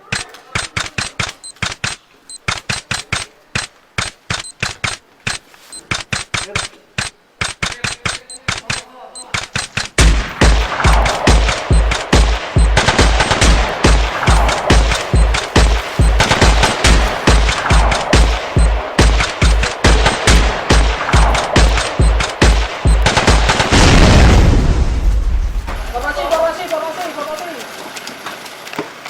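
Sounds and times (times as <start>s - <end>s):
airsoft gunfire: 0.0s - 26.6s
heavy booming bass beat: 7.7s - 26.3s.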